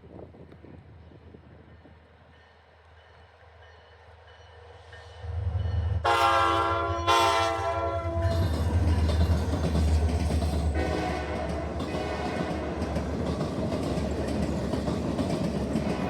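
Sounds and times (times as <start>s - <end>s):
diesel locomotive engine rumble: 0.0s - 16.0s
train running noise: 0.0s - 16.0s
train air horn blasts: 6.0s - 8.4s, 10.7s - 12.8s.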